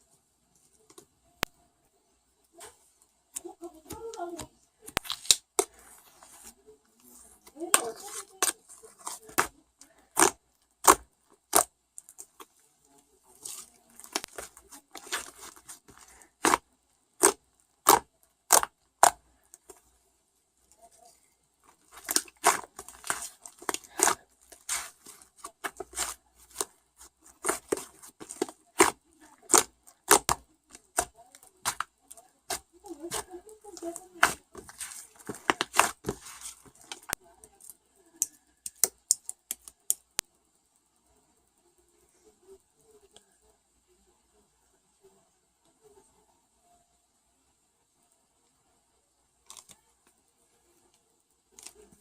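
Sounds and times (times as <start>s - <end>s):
rustling: 20.7s - 37.2s
sharp clicks and snaps: 36.8s - 40.3s.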